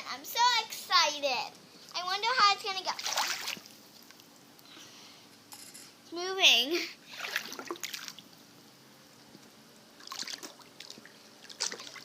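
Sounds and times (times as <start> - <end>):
water splashing and trickling: 2.9 - 3.8, 7.1 - 8.3, 10.0 - 12.0.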